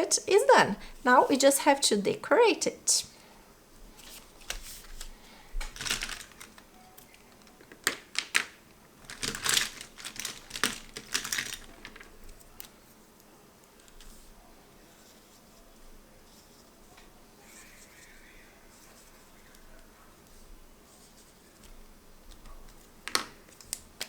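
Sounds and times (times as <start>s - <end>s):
paper and markers rustling: 3.9s - 5.2s, 13.7s - 23.8s.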